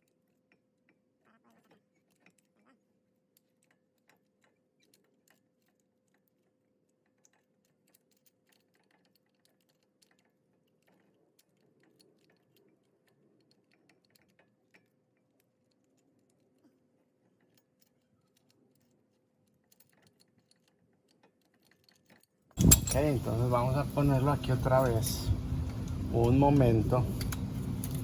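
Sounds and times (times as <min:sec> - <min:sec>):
faint steady hum: 0:22.6 - 0:28.0.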